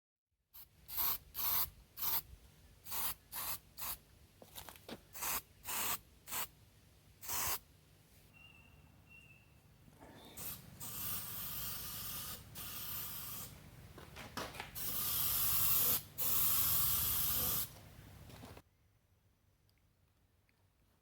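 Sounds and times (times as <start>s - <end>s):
spray-paint can hissing: 0.6s - 2.2s, 2.8s - 4.0s, 5.2s - 6.5s, 7.2s - 7.6s, 10.4s - 13.6s, 14.8s - 17.7s.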